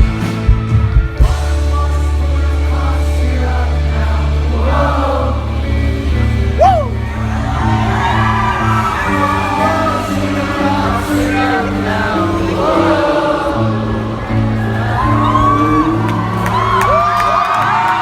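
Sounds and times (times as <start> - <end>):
live rock band: 0.0 - 18.0
lead vocal singing: 1.3 - 18.0
crowd whooping: 6.5 - 18.0.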